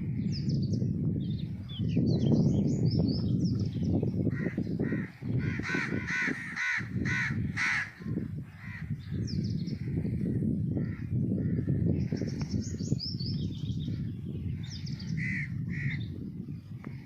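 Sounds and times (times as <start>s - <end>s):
small birds chirping: 0.0s - 5.9s, 7.6s - 17.0s
crow cawing: 4.3s - 9.0s.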